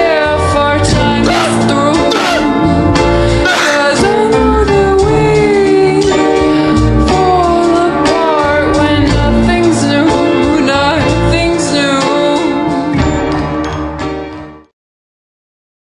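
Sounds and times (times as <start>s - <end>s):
slowed reverb-heavy pop music: 1.2s - 5.7s.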